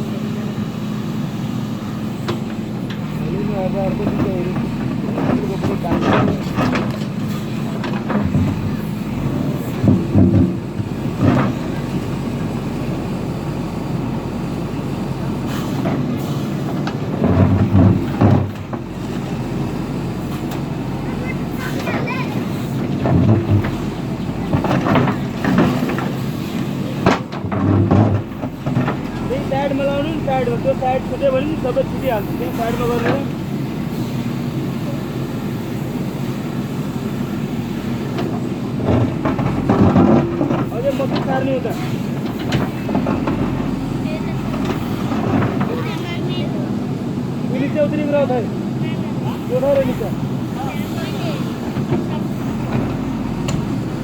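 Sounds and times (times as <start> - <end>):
diesel engine running: 0.0 - 54.0
knocks and clanks: 3.8 - 12.1, 15.5 - 19.4, 21.3 - 33.4, 38.0 - 46.0, 51.4 - 54.0.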